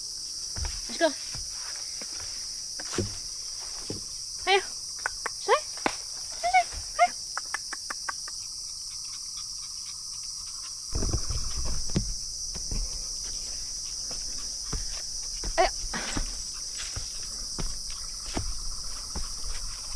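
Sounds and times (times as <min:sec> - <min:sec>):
insects chorus: 0:00.0 - 0:19.9
low rustling and knocking: 0:10.9 - 0:19.9.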